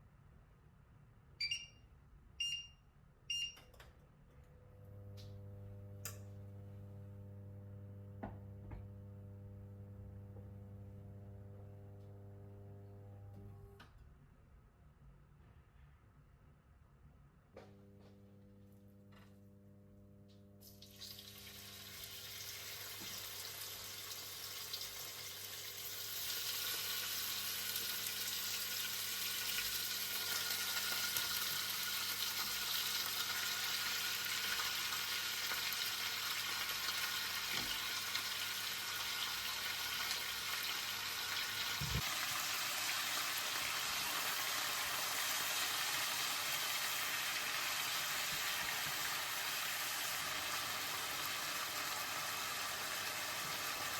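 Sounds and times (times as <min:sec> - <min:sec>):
food sizzling in hot oil: 0:20.6 - 0:53.9.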